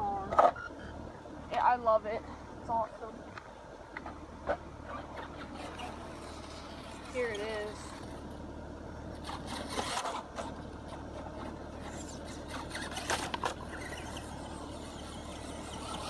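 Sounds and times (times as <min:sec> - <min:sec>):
air conditioner humming: 0:00.0 - 0:16.0
tyres scraping on dirt: 0:04.0 - 0:16.0.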